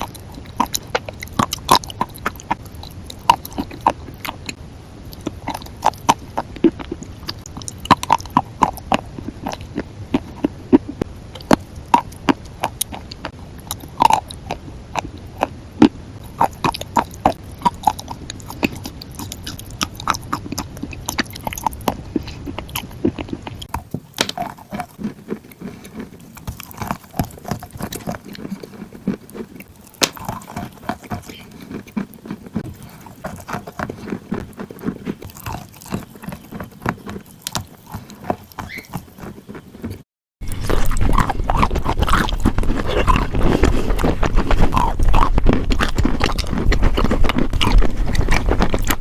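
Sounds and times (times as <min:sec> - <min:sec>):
chewing crunchy food: 0:00.0 - 0:49.0.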